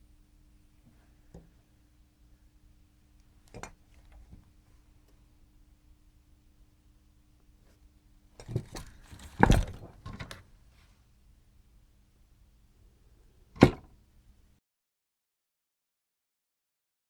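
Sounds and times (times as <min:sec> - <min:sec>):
faint steady hum: 0:00.0 - 0:14.6.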